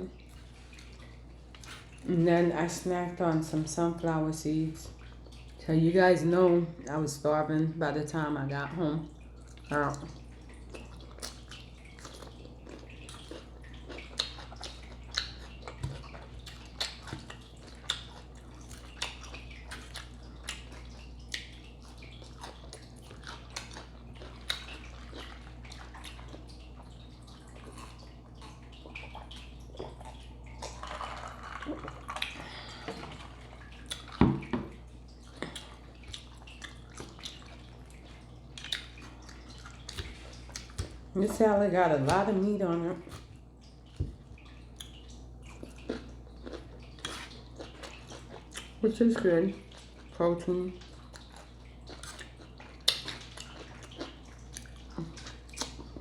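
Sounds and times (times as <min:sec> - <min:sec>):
faint water trickle: 0:00.0 - 0:56.0
chewing crunchy salad: 0:00.2 - 0:02.1, 0:09.3 - 0:41.4, 0:42.0 - 0:56.0.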